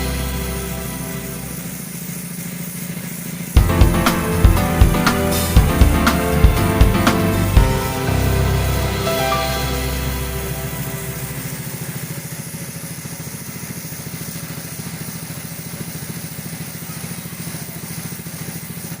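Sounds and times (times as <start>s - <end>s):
background music: 0.0s - 1.9s, 3.6s - 12.0s
pressure washer running: 0.0s - 19.0s.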